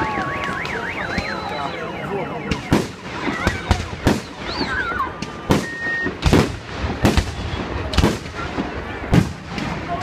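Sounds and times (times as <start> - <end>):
fireworks booming: 2.2 - 10.0.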